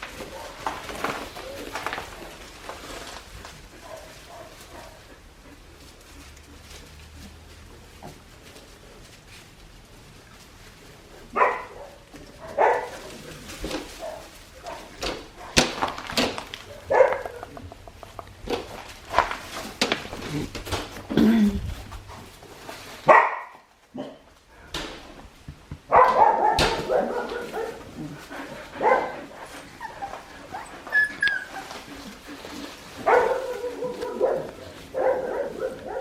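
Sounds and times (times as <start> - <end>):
puppies barking and yipping: 11.1 - 21.1, 25.8 - 36.0.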